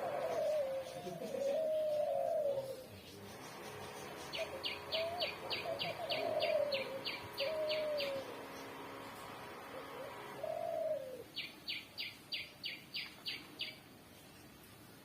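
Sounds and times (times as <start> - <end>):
dove cooing: 0.0 - 11.8
high falling bird chirps: 1.8 - 13.8.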